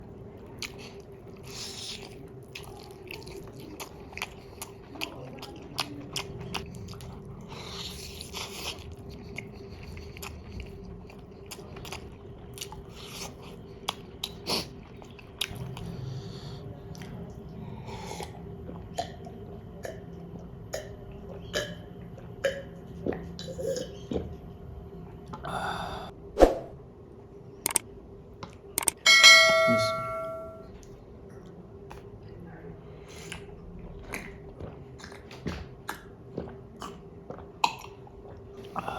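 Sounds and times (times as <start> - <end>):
faint steady hum: 0.0 - 38.9
chewing and mouth sounds: 0.4 - 24.4, 33.1 - 38.9
clink: 29.0 - 30.6.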